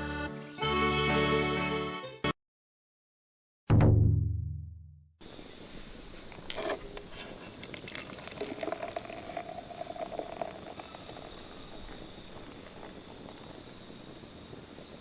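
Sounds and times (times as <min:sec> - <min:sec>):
food bubbling and hissing: 0:05.2 - 0:15.0
fire crackles: 0:05.5 - 0:15.0.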